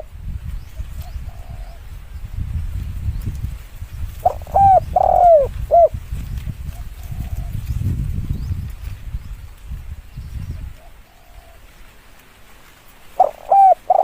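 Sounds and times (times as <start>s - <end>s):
dove cooing: 0.9s - 1.9s, 4.2s - 6.0s, 6.8s - 7.6s, 10.8s - 11.8s, 13.1s - 14.0s.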